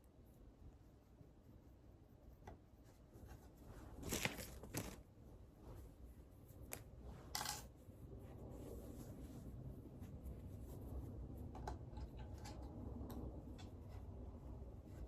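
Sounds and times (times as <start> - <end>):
rustling and scraping: 2.8 - 12.8.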